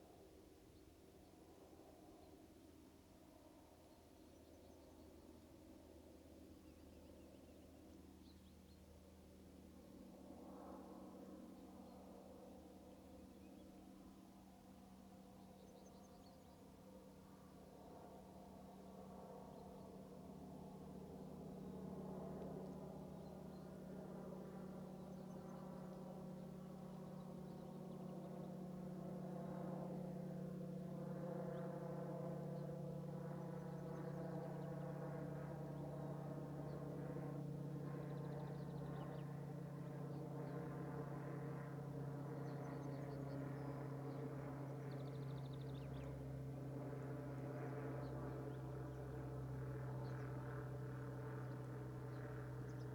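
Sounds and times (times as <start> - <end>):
distant engine drone: 22.3 - 52.9.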